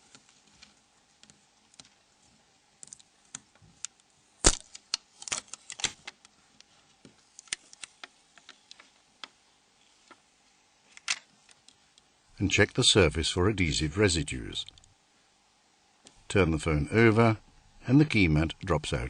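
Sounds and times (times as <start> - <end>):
small parts clicking and tapping: 0.0 - 2.0, 2.8 - 9.4, 10.9 - 12.1.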